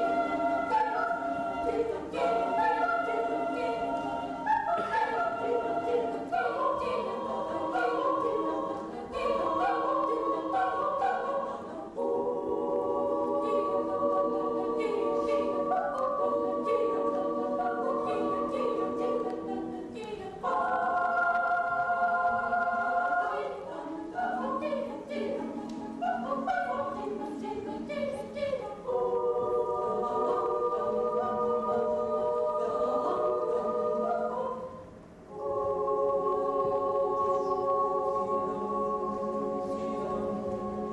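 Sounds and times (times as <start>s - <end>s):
children's choir singing: 0.0s - 40.9s.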